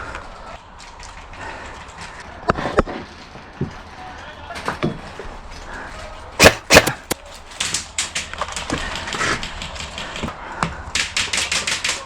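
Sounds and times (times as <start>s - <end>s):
airsoft guns firing bursts: 6.4s - 7.3s.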